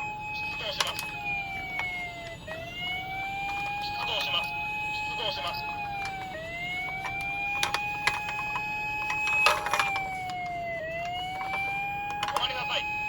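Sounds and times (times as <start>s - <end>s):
police siren wailing: 0.0s - 13.0s
sharp clicks and clatter: 0.4s - 2.6s, 5.4s - 12.7s.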